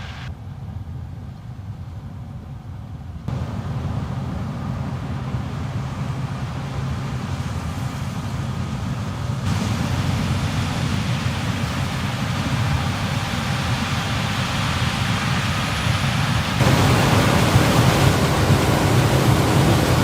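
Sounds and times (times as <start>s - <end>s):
machine hiss: 0.0s - 0.3s, 9.5s - 20.0s
diesel engine drone: 0.0s - 0.6s, 3.3s - 20.0s.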